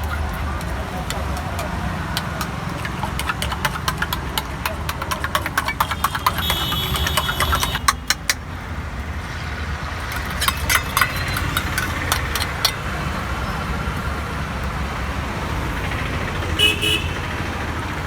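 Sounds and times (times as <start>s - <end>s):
metal spatula clicking on griddle: 10.1s - 12.8s.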